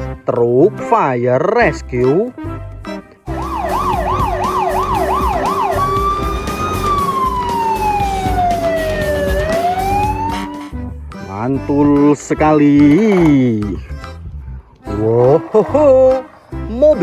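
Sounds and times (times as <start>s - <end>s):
electronic siren wailing: 3.3s - 10.5s.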